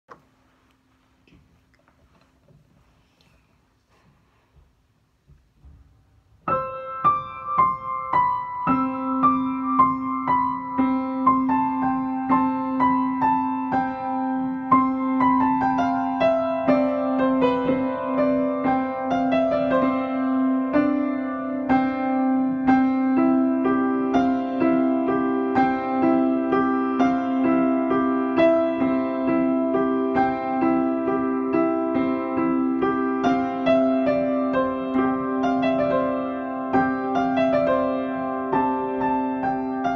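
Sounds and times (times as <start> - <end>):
piano melody: 6.2 - 39.9.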